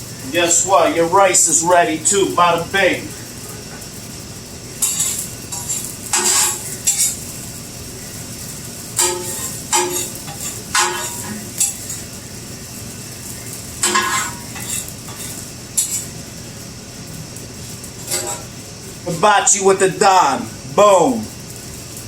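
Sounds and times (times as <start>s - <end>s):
food sizzling: 0.0s - 22.0s
metal spatula scraping griddle: 4.7s - 16.4s, 17.7s - 18.6s.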